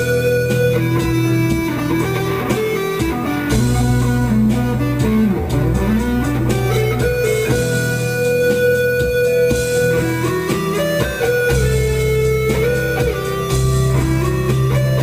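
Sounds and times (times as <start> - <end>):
sliding guitar melody: 0.0 - 15.0
steady bass line: 0.0 - 15.0.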